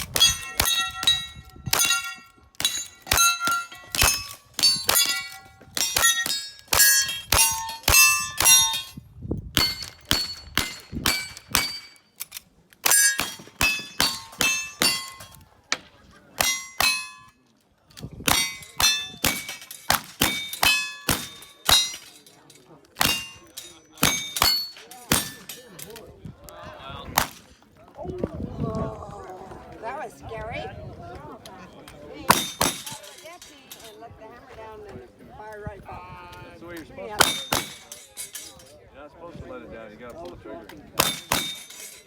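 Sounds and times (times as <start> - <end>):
bullets clanging on steel targets: 0.0 - 9.0, 9.6 - 15.4, 16.4 - 17.4, 18.2 - 26.0, 32.3 - 34.0, 37.2 - 38.8, 40.9 - 42.0.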